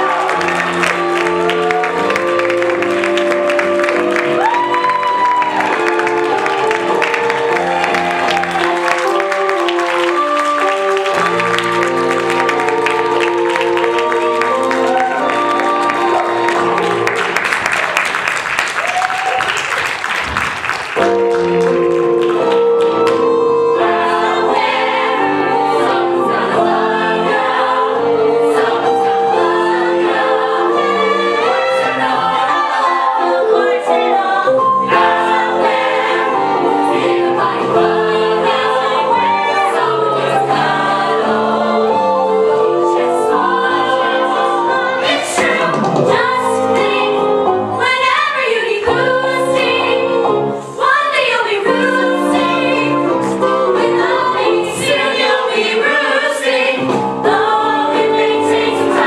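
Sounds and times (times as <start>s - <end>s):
instrumental accompaniment: 0.0s - 18.4s, 20.3s - 59.0s
chorus singing show tune: 23.2s - 59.0s.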